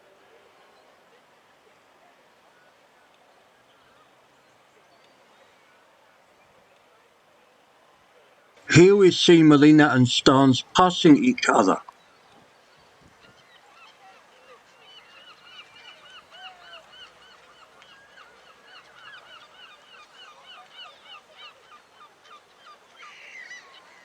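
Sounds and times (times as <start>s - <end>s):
flock of birds chattering: 8.7s - 24.0s.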